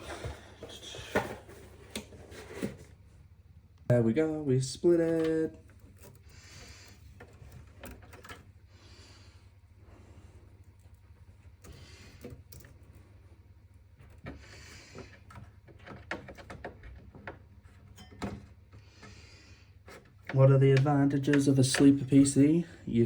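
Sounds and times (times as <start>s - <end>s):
cable rustling: 0.0s - 3.1s.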